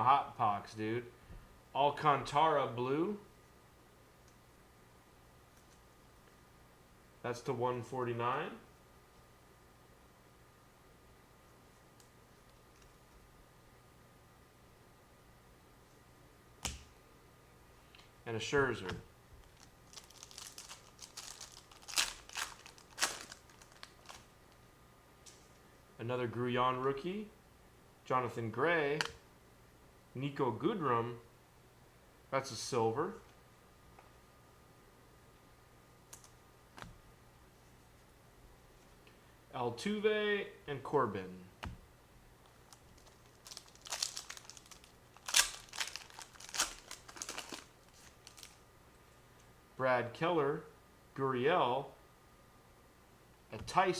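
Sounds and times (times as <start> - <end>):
crinkly plastic packaging rustling: 19.4 - 24.6, 42.4 - 48.6.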